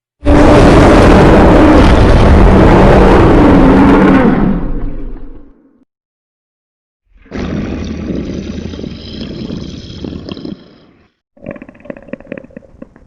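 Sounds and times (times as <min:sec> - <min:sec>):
dinosaur roar: 0:00.2 - 0:04.6.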